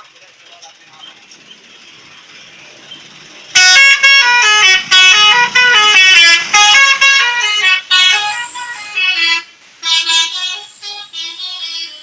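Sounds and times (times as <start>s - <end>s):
musical air horn melody: 3.6s - 12.0s.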